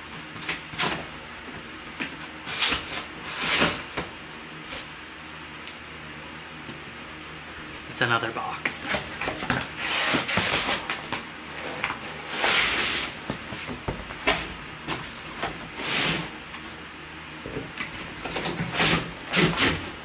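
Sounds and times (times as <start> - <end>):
cardboard rustling and scraping: 8.8 - 16.8, 17.5 - 20.0.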